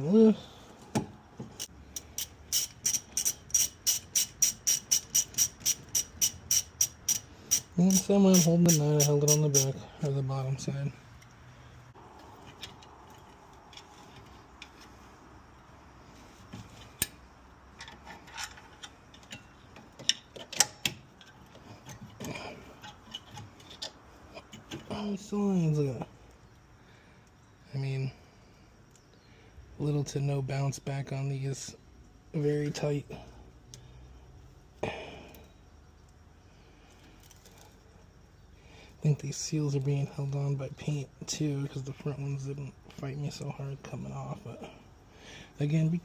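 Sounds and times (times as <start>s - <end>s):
ratchet wrench clicking: 1.6s - 9.8s
metal parts clinking: 17.8s - 22.1s.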